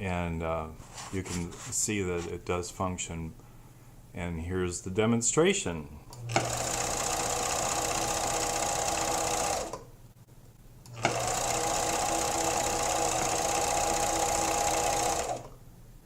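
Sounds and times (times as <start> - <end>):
sewing machine running: 6.2 - 9.8, 10.9 - 15.6.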